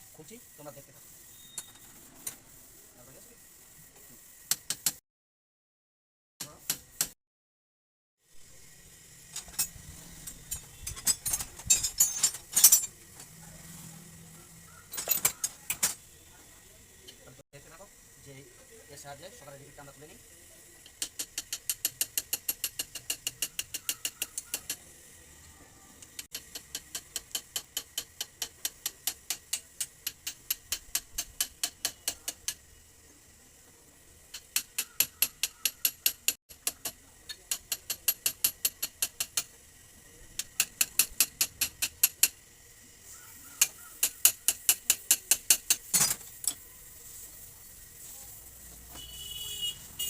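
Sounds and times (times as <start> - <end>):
ratchet tool clicking: 20.8 - 24.9, 26.0 - 32.7, 34.3 - 42.5, 43.6 - 46.6.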